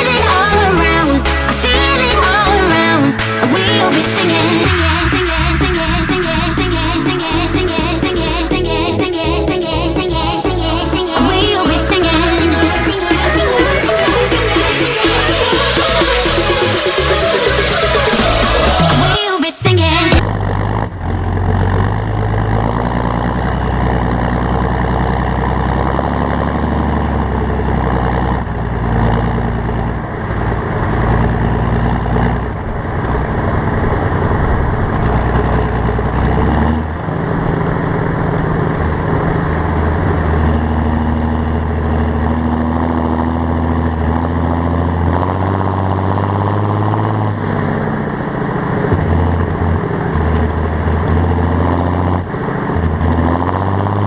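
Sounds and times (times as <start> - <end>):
high sliding whine: 0.0 - 21.1, 27.1 - 44.9
tractor engine running: 0.0 - 54.0.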